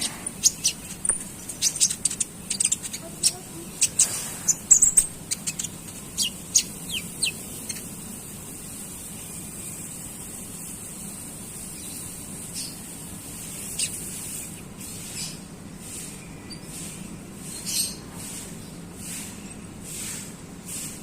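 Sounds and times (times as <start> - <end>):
songbird chirping: 0.0 - 8.2
low hum and hiss: 0.0 - 21.0.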